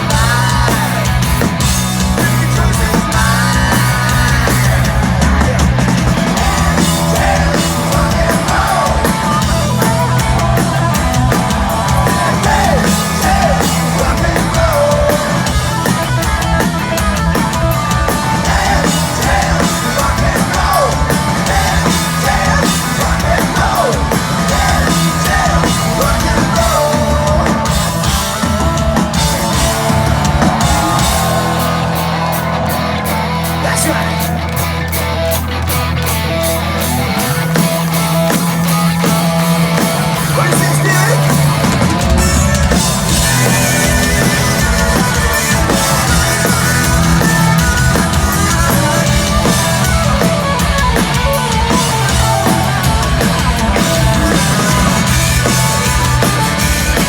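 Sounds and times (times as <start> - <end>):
person yelling and singing: 0.0 - 32.3, 40.1 - 50.6
drum kit: 0.0 - 57.0
electric guitars: 0.0 - 57.0
live hard rock band: 0.0 - 57.0.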